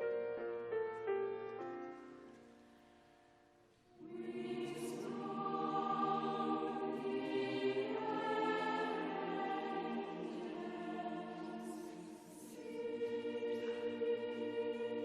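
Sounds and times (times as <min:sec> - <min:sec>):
choir singing sustained chords: 0:03.9 - 0:15.0.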